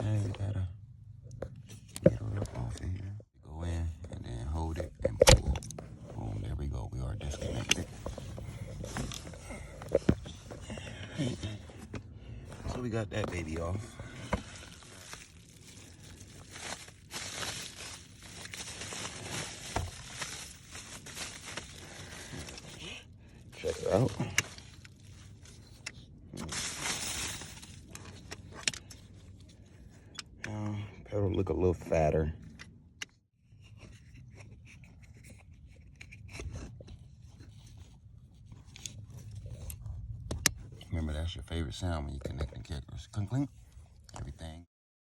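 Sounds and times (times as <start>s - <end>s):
rustling and crinkling: 7.2s - 29.9s.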